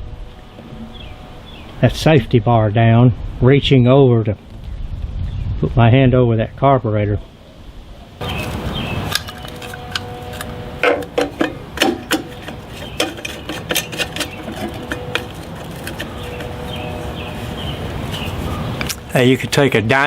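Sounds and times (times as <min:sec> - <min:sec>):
clicks of parts being handled: 0:08.2 - 0:16.8
lawn mower engine running: 0:08.2 - 0:20.0.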